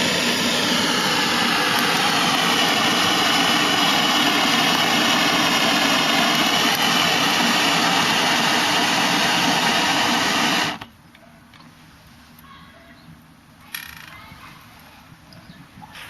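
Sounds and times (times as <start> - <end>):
burner flame rushing: 0.0 - 10.9.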